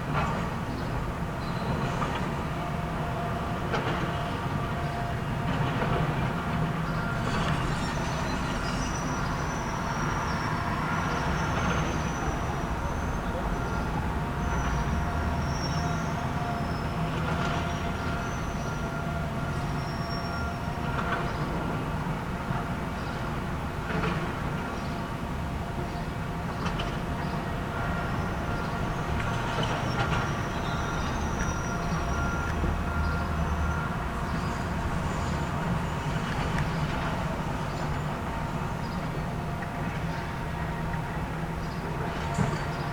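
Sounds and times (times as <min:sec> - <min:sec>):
thin high squeal: 0:07.0 - 0:10.6.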